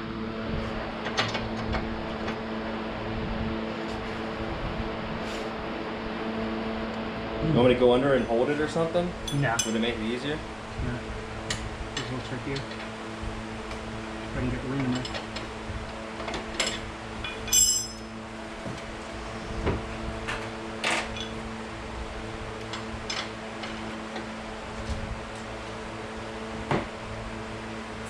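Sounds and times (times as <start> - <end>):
fan humming: 0.0 - 28.0
hand tools clinking on metal bolts: 16.6 - 18.0.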